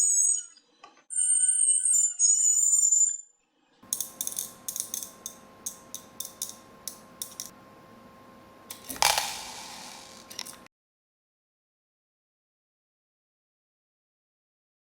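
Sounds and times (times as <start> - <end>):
high whistle-like tone: 1.1 - 3.3
mechanical clicks and ticks: 3.8 - 7.6
faint steady hum: 3.8 - 10.7.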